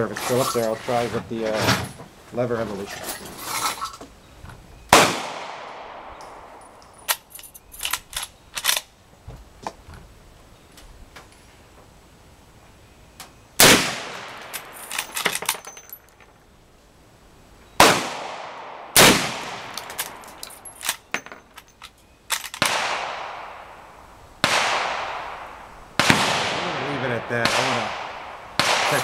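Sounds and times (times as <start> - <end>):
gunshots with echo: 4.9 - 6.6, 17.8 - 19.8, 24.4 - 29.0.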